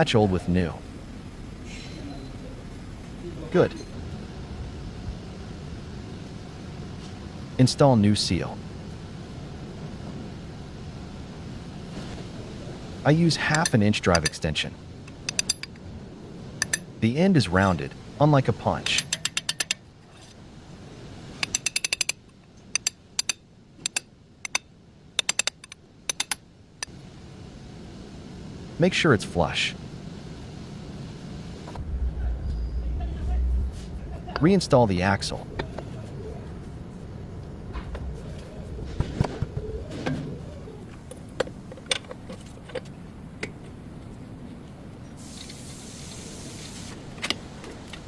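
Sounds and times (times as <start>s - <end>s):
metallic clicks and knocks: 15.1s - 15.8s, 21.4s - 26.4s
low steady rumble: 26.5s - 45.1s.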